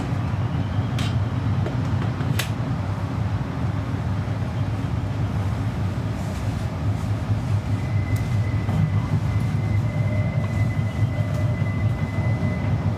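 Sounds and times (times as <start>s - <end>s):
distant city traffic rumble: 0.0s - 12.9s.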